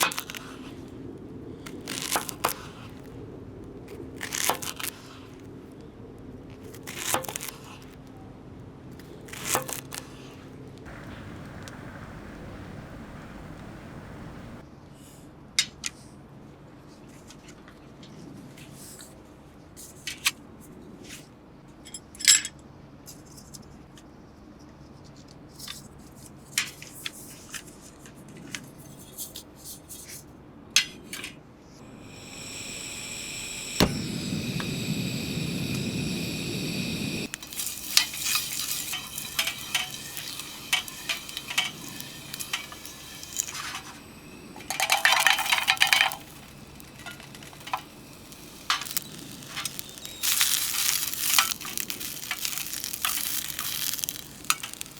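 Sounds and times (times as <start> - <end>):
steady hiss: 10.9 - 14.6, 31.8 - 54.9
utensils clinking on metal pots: 37.3 - 54.9.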